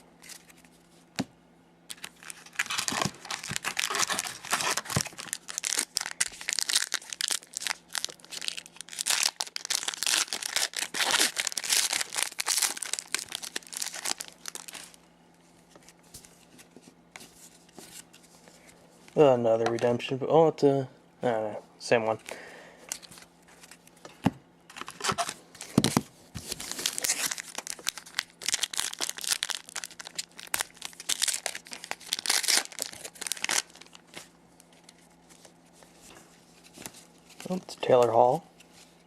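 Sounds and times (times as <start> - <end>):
wrapper tearing and crinkling: 1.9 - 15.0, 24.7 - 35.4.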